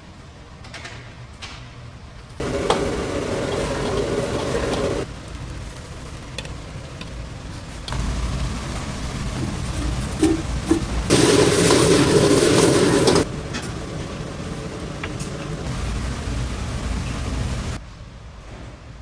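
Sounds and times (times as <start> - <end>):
food sizzling and frying: 2.4 - 5.1, 7.9 - 13.3
utensils clinking: 2.4 - 5.1, 9.3 - 15.7.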